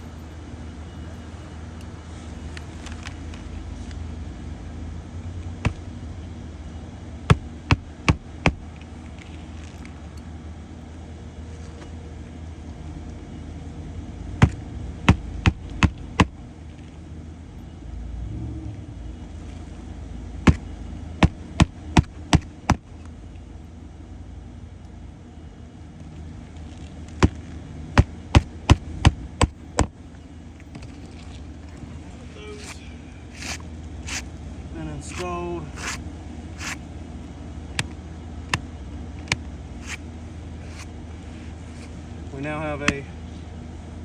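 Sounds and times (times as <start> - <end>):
low rumble: 17.6 - 21.8.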